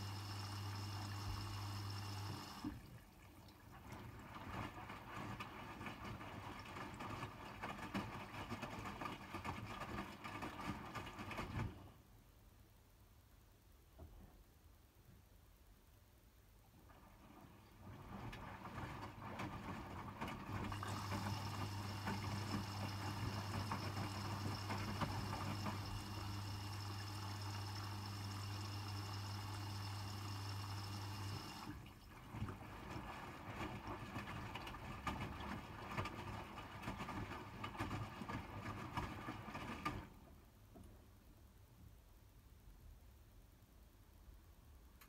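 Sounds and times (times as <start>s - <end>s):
water sloshing in washing machine: 0.0s - 12.0s, 16.9s - 40.4s.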